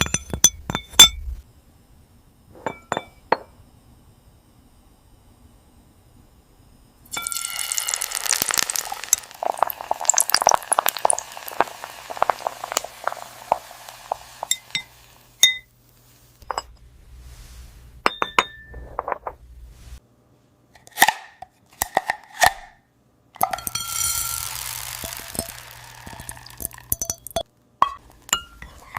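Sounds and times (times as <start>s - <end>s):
glass clinking: 0.0s - 1.3s, 2.6s - 3.5s, 7.1s - 13.2s, 14.1s - 15.7s, 16.4s - 16.8s, 18.0s - 19.3s, 23.4s - 28.9s.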